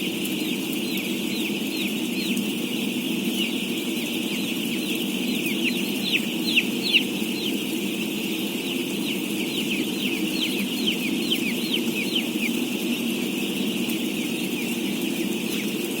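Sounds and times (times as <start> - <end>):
chicks peeping: 0.0 - 16.0
steady low hum: 0.0 - 16.0.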